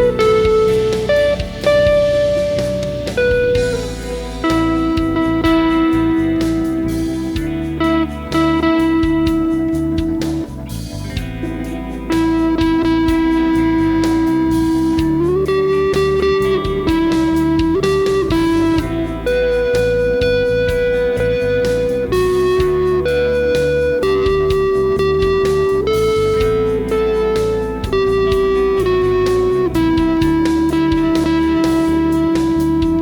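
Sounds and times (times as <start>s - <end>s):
electric guitar lead: 0.0s - 33.0s
rock backing track: 0.0s - 33.0s.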